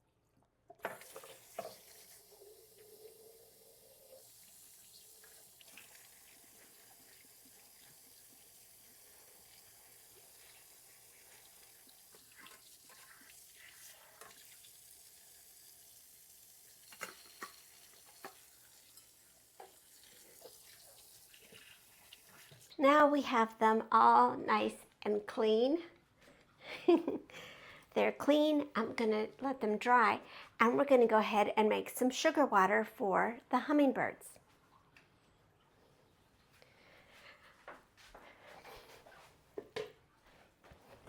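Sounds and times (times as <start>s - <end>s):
water hissing in sink: 0.8s - 22.8s.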